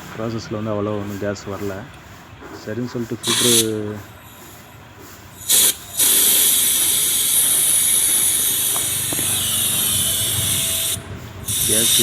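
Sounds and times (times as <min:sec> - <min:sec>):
gas hissing out of pipe: 0:03.2 - 0:04.7, 0:05.3 - 0:12.0.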